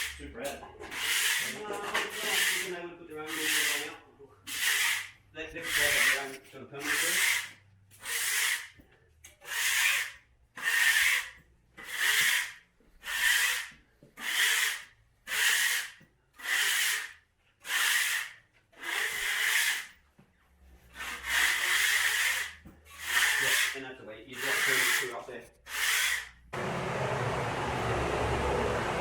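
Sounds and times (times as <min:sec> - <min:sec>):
hand tool swishing over drywall: 0:20.9 - 0:23.8.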